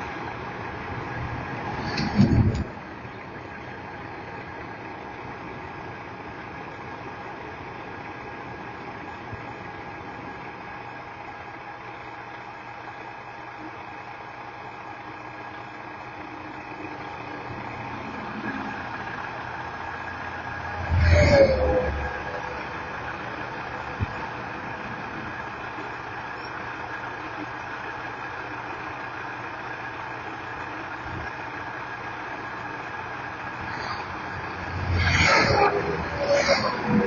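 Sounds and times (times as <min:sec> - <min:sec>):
vehicle engine humming: 0:00.0 - 0:37.0.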